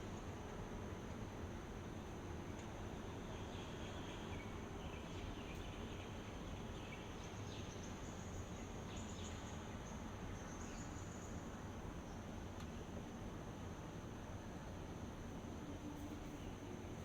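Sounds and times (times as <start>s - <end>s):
low background hiss: 0.0s - 17.0s
insects calling: 2.9s - 12.4s.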